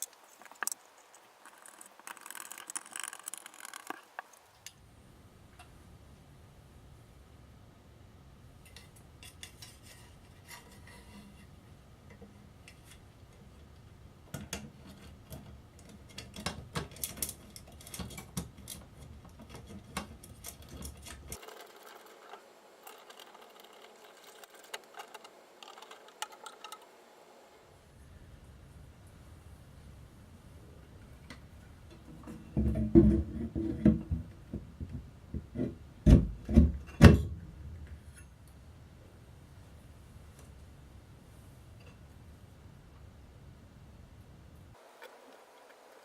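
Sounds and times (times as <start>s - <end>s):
low background hum: 0.0s - 46.0s
metal hardware clicking and clinking: 14.3s - 26.8s.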